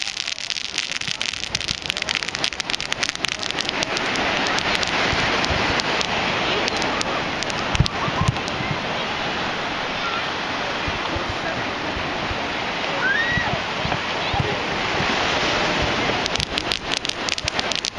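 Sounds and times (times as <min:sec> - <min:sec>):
fireworks crackling: 0:00.0 - 0:08.8, 0:14.4 - 0:17.9
steady rushing hiss: 0:00.0 - 0:17.9.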